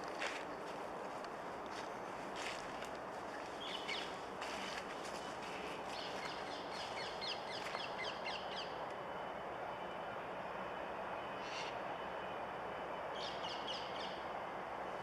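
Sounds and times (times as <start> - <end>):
outdoor background hum: 0.0 - 15.0
bird chirping: 3.4 - 4.2.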